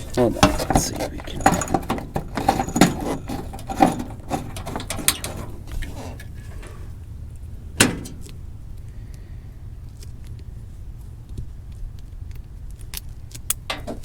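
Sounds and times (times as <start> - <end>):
metallic clicks and knocks: 0.0 - 7.0, 7.8 - 8.5
steady low hum: 0.0 - 11.6.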